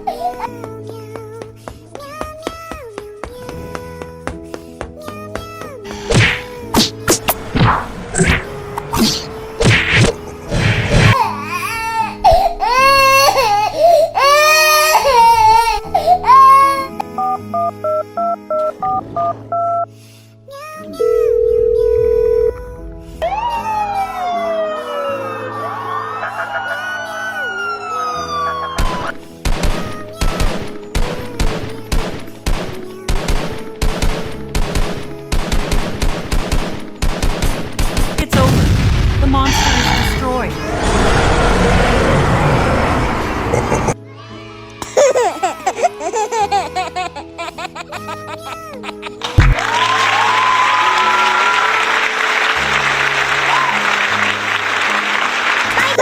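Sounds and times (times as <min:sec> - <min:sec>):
background music: 0:00.0 - 0:56.0
high-pitched crying wail: 0:11.1 - 0:17.0, 0:23.2 - 0:29.2, 0:43.6 - 0:52.2
wailing siren-like sliding tones: 0:23.2 - 0:29.0
heavy hits: 0:38.3 - 0:44.0.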